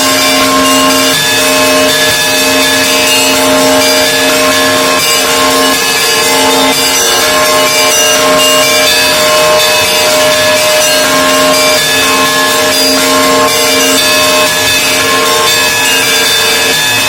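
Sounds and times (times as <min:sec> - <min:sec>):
large bells humming: 0:00.0 - 0:17.0
small bells ringing quickly: 0:00.0 - 0:17.0.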